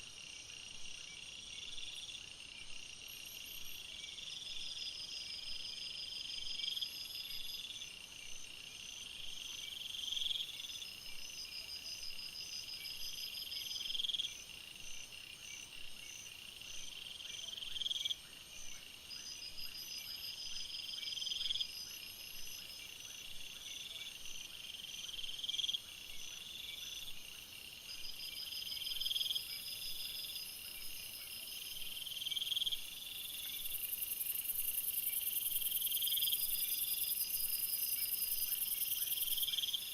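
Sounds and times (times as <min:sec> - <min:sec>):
insects trilling: 0:19.1 - 0:39.9.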